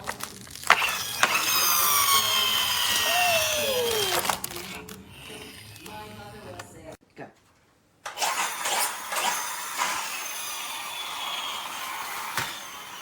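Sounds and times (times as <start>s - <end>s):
toy car gear clicks: 0.0s - 6.0s
flywheel whirring down: 0.7s - 6.6s.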